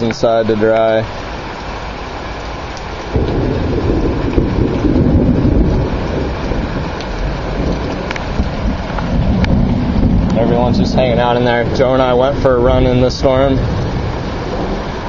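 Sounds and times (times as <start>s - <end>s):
heavy rain pouring: 0.0s - 15.0s
thunder rumbling: 3.0s - 15.0s.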